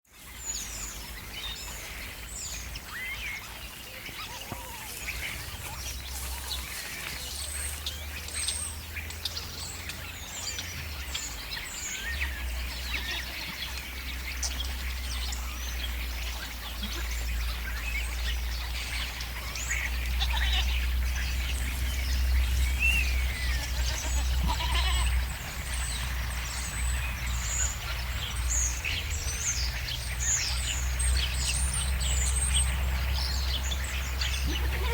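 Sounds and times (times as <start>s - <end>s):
starlings chattering and whistling: 0.2s - 34.9s
goats bleating: 12.9s - 13.6s, 20.1s - 20.9s, 22.8s - 25.3s, 34.4s - 34.9s.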